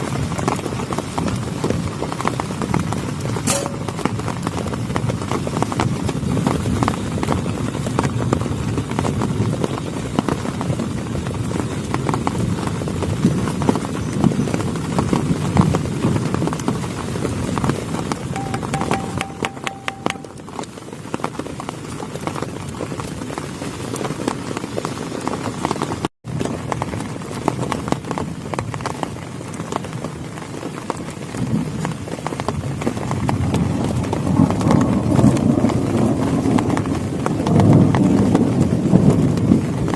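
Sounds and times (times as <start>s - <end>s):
heavy rain on plastic tarp: 0.0s - 39.9s
sharp click: 3.5s - 3.9s.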